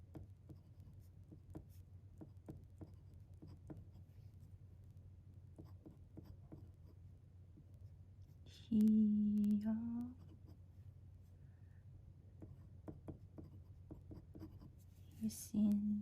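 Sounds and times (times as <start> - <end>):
low steady hum: 0.0 - 16.0
pen nib scratching on paper: 0.1 - 4.2, 5.6 - 7.0, 12.4 - 15.2.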